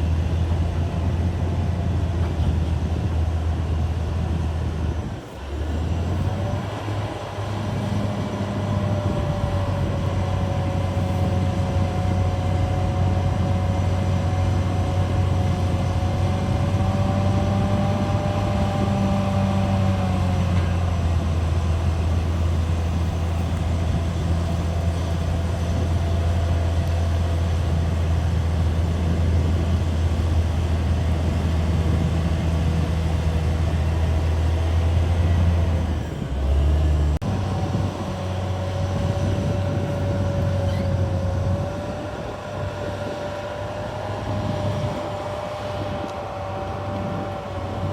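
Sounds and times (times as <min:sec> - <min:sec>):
bulldozer diesel engine drone: 0:00.0 - 0:47.9
engine whine: 0:00.0 - 0:47.9.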